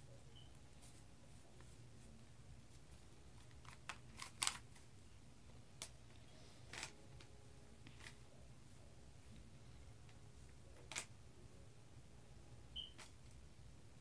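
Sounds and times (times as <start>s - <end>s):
low steady hum: 0.0s - 14.0s
plastic cube clicks: 3.5s - 4.6s.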